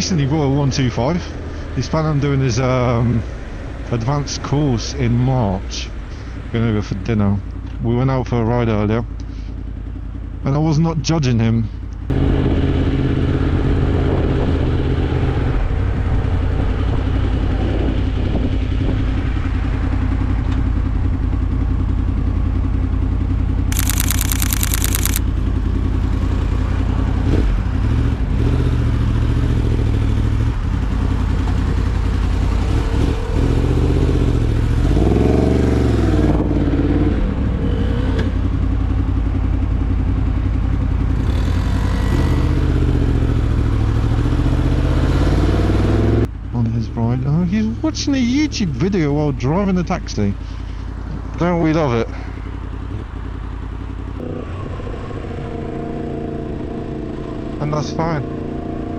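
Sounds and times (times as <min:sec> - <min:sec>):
motorcycle engine running: 0:09.0 - 0:10.6, 0:18.1 - 0:58.9.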